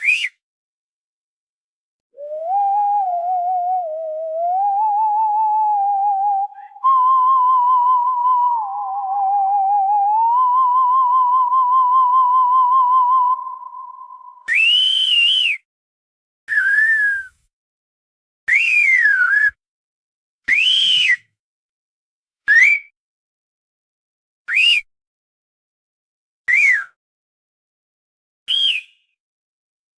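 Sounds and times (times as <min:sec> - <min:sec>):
wavering wind whistle: 0:02.2 - 0:15.3.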